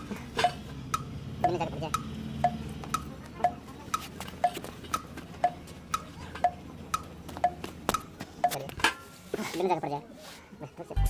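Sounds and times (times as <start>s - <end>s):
clock ticking: 0.0s - 8.7s.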